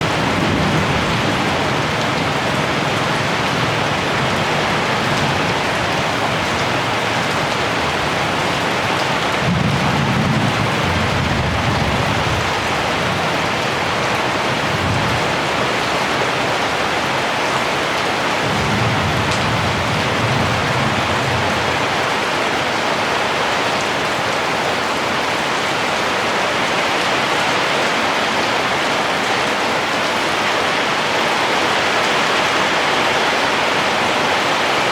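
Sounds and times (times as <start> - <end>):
distant thunder rumbles: 0.0 - 15.6, 18.4 - 22.1
heavy rain: 0.0 - 34.9.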